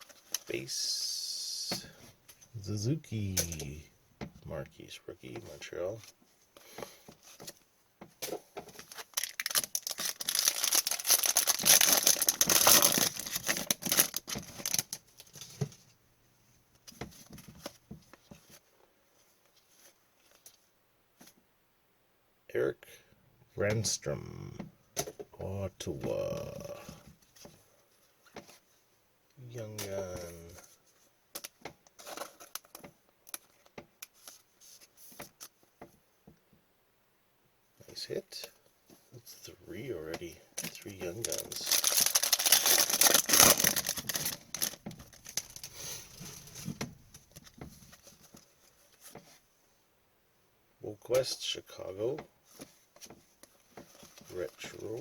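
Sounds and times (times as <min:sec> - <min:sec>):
foil wrapper tearing and crinkling: 0:08.9 - 0:15.0, 0:41.2 - 0:46.6.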